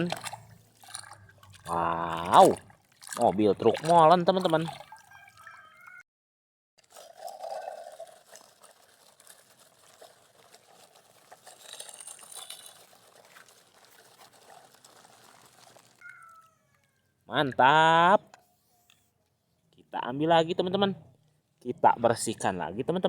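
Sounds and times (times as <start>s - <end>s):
water trickling and splashing: 0.0s - 6.0s, 6.8s - 16.3s.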